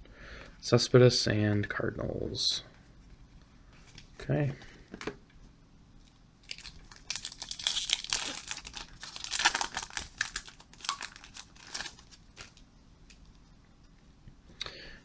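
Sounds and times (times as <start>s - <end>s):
wrapper tearing and crinkling: 6.4s - 13.2s.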